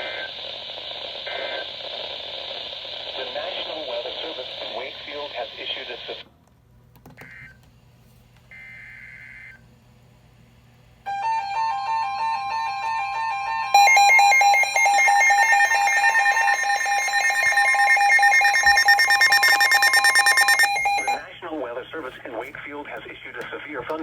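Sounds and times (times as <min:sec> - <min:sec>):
pulsing electronic alarm beeps: 0:11.1 - 0:21.3
buzzy data burst: 0:13.7 - 0:21.2.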